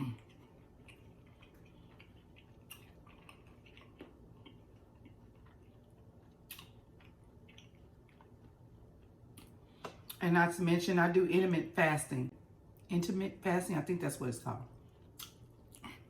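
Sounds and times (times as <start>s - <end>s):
faint chewing: 0.0s - 10.2s, 14.8s - 16.0s
soft mouth clicks: 15.2s - 16.0s.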